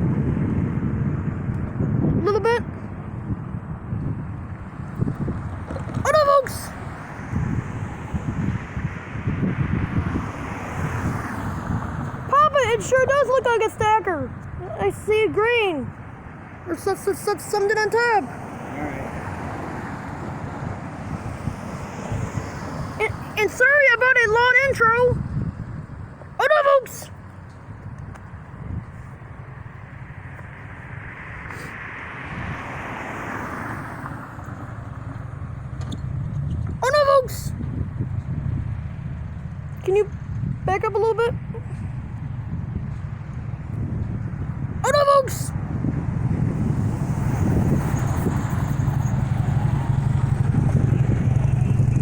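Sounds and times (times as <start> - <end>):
freight train rumbling past: 46.2 - 52.0.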